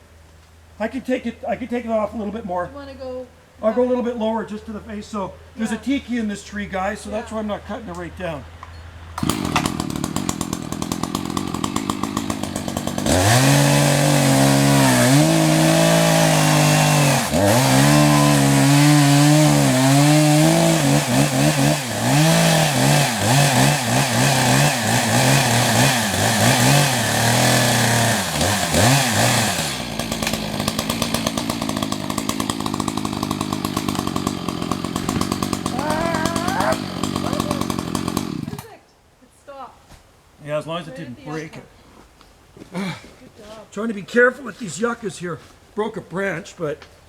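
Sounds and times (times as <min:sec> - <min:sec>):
chainsaw cutting into tree: 0:09.2 - 0:38.7
chainsaw revving and idling: 0:09.2 - 0:38.7.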